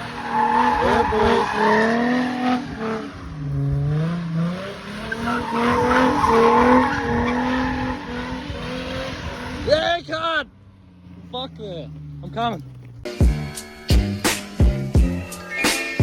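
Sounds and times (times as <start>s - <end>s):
tyres squealing: 0.0s - 3.2s, 5.1s - 8.4s
car engine revving: 0.0s - 9.9s.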